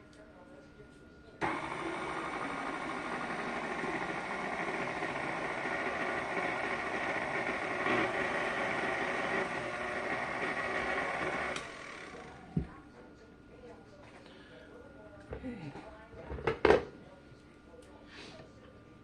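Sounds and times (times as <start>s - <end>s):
electric mixer beating batter: 1.4s - 12.7s.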